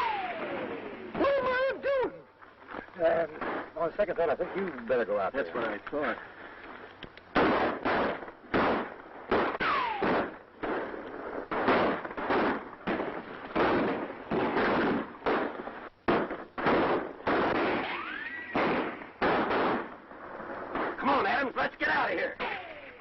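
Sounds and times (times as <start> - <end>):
ricochet whines: 0.0 - 1.5, 7.4 - 10.8, 16.1 - 19.9, 22.4 - 23.0
gunshots: 0.0 - 1.6, 3.4 - 3.8, 7.3 - 21.4, 22.0 - 23.0.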